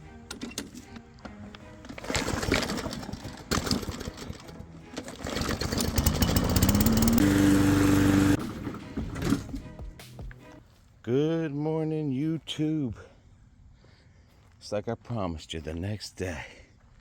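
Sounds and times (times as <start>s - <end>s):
lawn mower engine revving: 2.0s - 9.8s.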